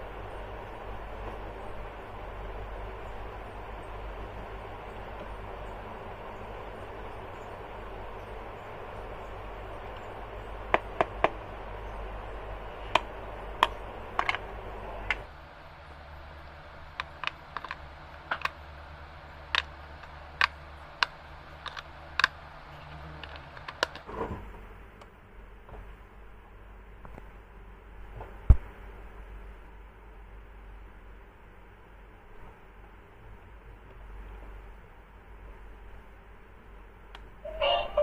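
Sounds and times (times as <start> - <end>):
low steady hum: 0.0 - 38.0
sharp clicks and taps: 16.9 - 18.6, 19.5 - 22.4.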